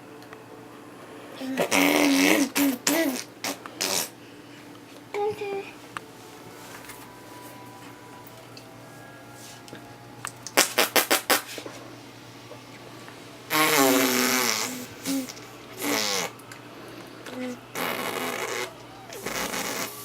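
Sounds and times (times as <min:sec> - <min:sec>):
fart-like mouth buzzing: 0:01.6 - 0:04.2, 0:10.6 - 0:11.6, 0:13.5 - 0:16.4, 0:17.2 - 0:20.0
mouth pops: 0:13.5 - 0:20.0.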